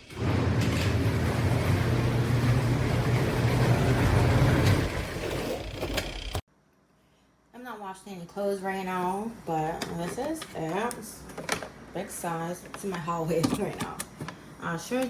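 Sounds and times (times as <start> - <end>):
washing machine motor hum: 0.0 - 6.4
water churning: 0.2 - 5.4.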